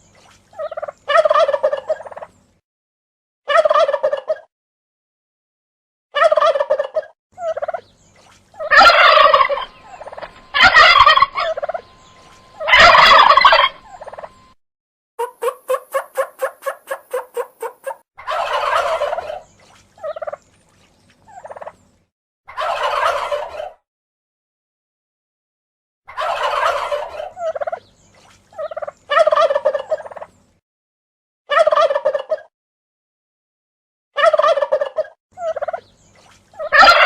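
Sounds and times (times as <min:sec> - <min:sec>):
turkeys gobbling: 0:00.6 - 0:02.3, 0:03.5 - 0:04.4, 0:06.2 - 0:07.8, 0:08.6 - 0:14.6, 0:15.2 - 0:19.4, 0:20.0 - 0:20.4, 0:21.3 - 0:21.7, 0:22.5 - 0:23.8, 0:26.1 - 0:27.8, 0:28.6 - 0:30.3, 0:31.5 - 0:32.5, 0:34.2 - 0:35.8, 0:36.6 - 0:37.0
rapid short turkey calls: 0:08.6 - 0:14.4, 0:15.2 - 0:19.4, 0:36.6 - 0:37.0.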